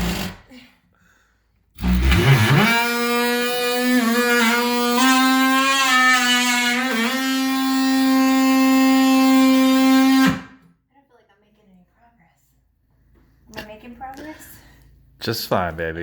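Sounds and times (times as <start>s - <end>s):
oscillating multi-tool buzzing: 1.8s - 10.6s.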